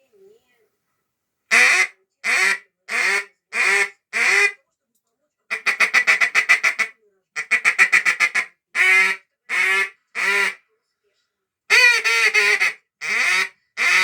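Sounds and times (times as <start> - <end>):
goose call clucks: 1.5 - 4.6, 5.5 - 10.6, 11.7 - 14.0
goose call honks: 1.5 - 4.6, 5.5 - 10.6, 11.7 - 14.0.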